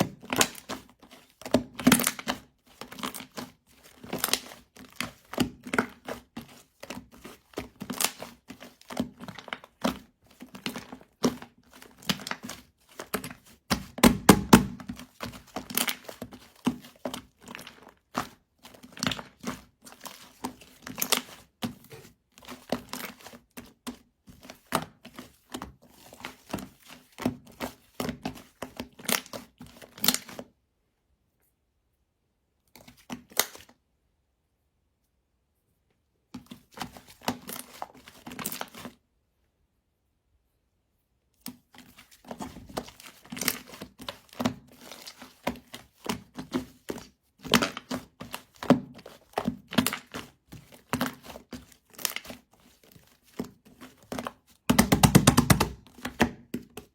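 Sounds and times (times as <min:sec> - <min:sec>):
slime clicking and crackling: 0:54.7 - 0:56.2.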